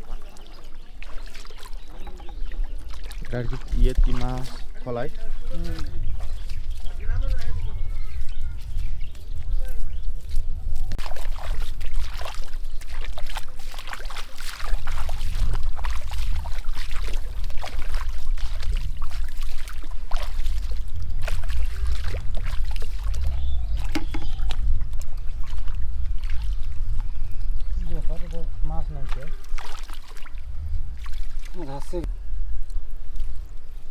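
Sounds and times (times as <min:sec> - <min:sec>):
water splashing and trickling: 0:00.0 - 0:33.9
steady low rumble: 0:28.5 - 0:33.4.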